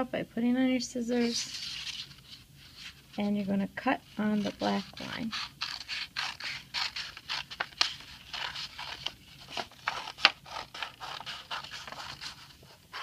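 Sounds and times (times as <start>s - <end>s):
paper rustling: 1.1s - 13.0s
scissors snipping paper: 4.2s - 13.0s.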